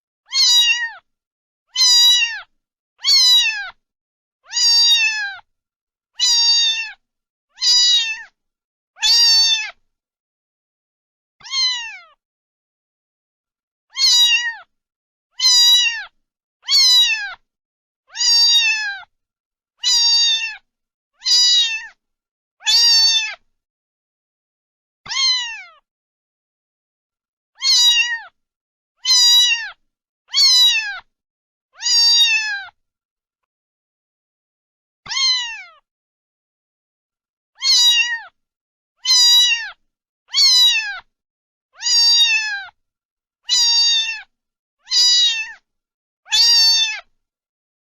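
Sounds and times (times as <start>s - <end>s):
cat meowing: 0.3s - 1.1s, 1.7s - 3.8s, 4.4s - 5.5s, 6.2s - 7.0s, 7.6s - 8.4s, 9.0s - 9.8s, 11.4s - 12.2s, 13.9s - 14.7s, 15.4s - 17.4s, 18.1s - 19.1s, 19.8s - 20.6s, 21.2s - 22.0s, 22.6s - 23.4s, 25.1s - 25.8s, 27.6s - 28.4s, 29.0s - 31.1s, 31.8s - 32.8s, 35.1s - 35.8s, 37.6s - 38.4s, 39.0s - 41.1s, 41.8s - 42.8s, 43.5s - 45.6s, 46.3s - 47.1s.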